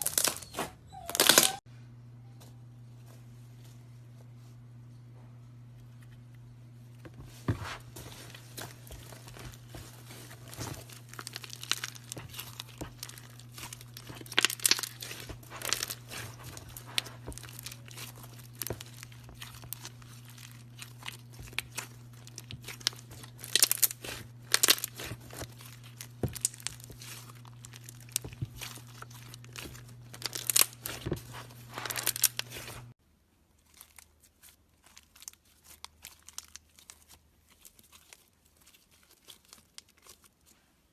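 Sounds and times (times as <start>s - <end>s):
slime crackling and popping: 8.6s - 32.9s, 33.6s - 40.5s.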